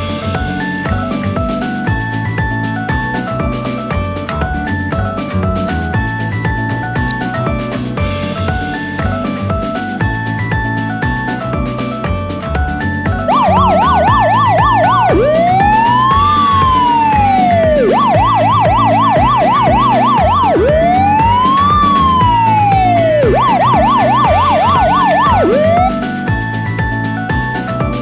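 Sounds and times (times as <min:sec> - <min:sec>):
background music with steady beat: 0:13.2 - 0:28.0
electronic siren yelp and wail: 0:13.3 - 0:26.0.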